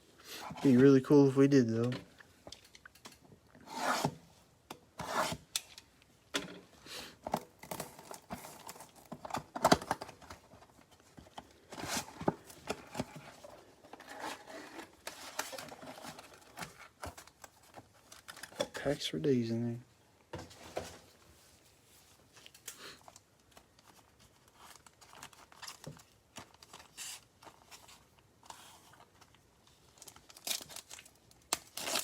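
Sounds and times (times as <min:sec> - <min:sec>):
rubbing and tearing of wrap: 0:23.7 - 0:32.0.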